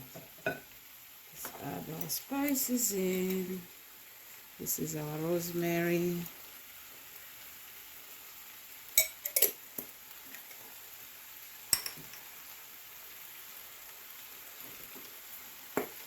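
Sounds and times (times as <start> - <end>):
kitchenware clinking: 0.0 - 0.7, 9.0 - 9.6, 11.7 - 12.3
faint steady hiss: 0.0 - 16.0.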